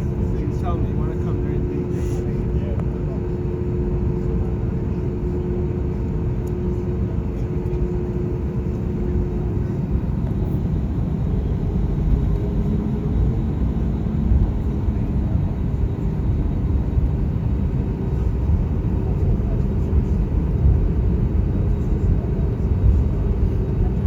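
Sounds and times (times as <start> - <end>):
airliner cabin rumble: 0.0 - 24.0
faint engine hum: 0.0 - 24.0.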